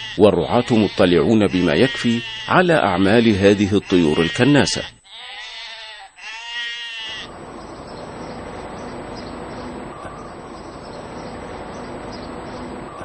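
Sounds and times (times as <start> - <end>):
sheep bleating: 0.0 - 7.3.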